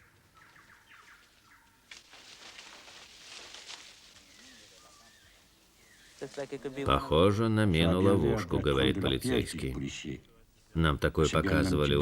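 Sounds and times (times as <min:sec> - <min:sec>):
birds chirping and calling: 0:00.0 - 0:01.8
soft hiss: 0:00.9 - 0:06.8.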